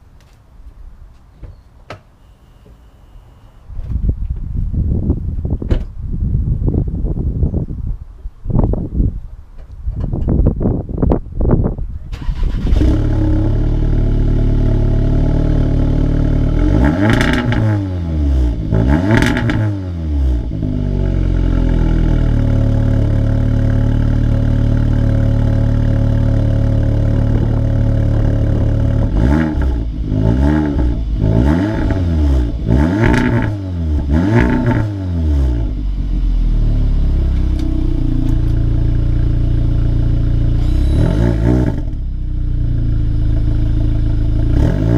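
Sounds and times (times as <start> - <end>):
car engine starting: 12.0 - 44.9
car engine revving: 12.2 - 44.9
car engine idling: 13.4 - 44.6.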